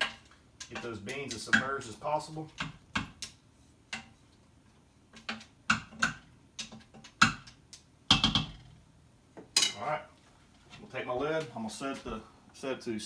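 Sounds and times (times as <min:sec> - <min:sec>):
spoon tapping metal pot: 0:05.2 - 0:08.6.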